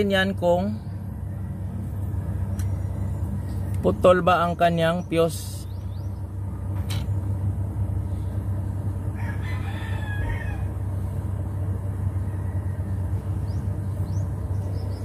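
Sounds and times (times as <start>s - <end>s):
steady low hum: 0.0s - 15.0s
rooster crowing: 9.1s - 11.2s, 12.0s - 13.4s.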